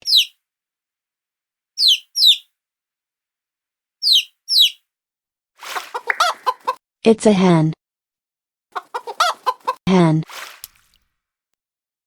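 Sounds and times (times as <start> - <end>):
baby chick peeping: 0.0 - 0.4, 1.8 - 2.5, 4.0 - 4.8, 5.6 - 6.8, 8.8 - 9.8.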